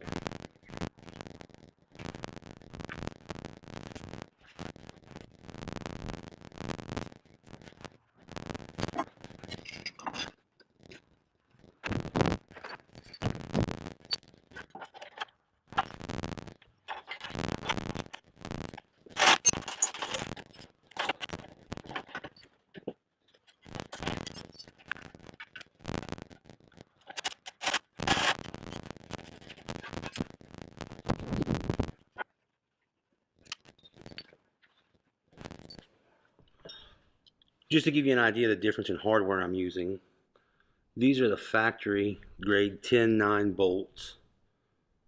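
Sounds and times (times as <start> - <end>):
scraping and clattering handling: 19.2 - 22.4.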